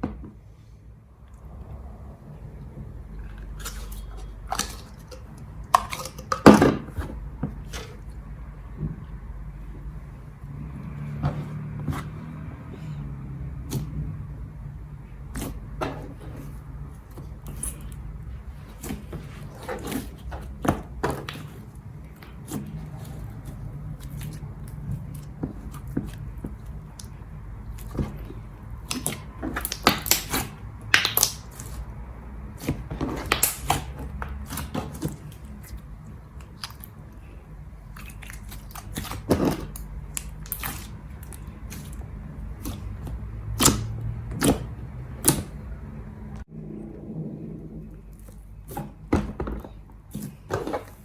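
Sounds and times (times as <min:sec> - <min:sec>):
low steady hum: 0:00.0 - 0:51.0.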